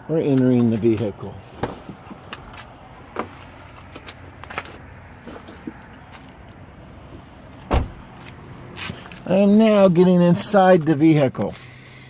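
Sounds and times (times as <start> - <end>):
loud thump: 7.7 - 8.1.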